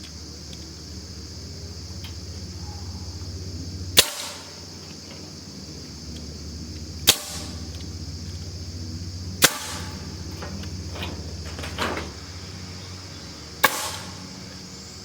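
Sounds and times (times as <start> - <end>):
steady low hum: 0.0 - 15.0
loud bangs with ringing tail: 3.9 - 4.8, 7.0 - 7.7, 9.4 - 10.4, 13.6 - 14.5.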